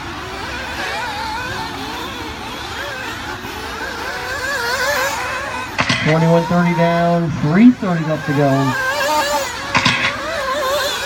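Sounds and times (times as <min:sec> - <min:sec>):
rc buggy engines racing: 0:00.0 - 0:11.0.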